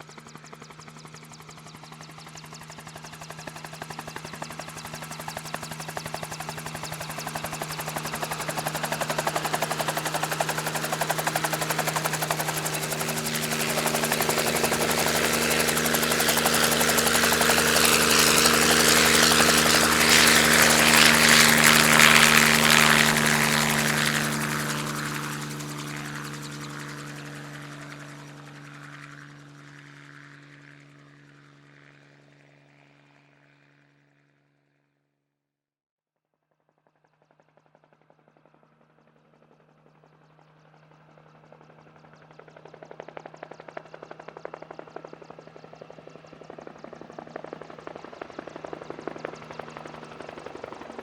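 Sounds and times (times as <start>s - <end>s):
helicopter flying by: 0.0s - 34.5s, 36.8s - 51.0s.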